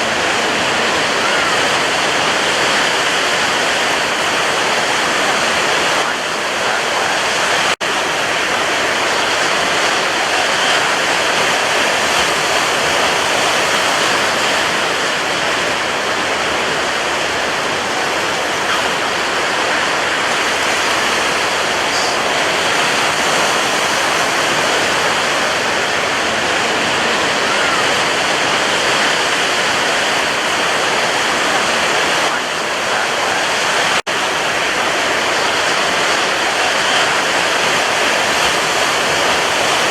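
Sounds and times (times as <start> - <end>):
sea surf rushing: 0.0 - 39.9.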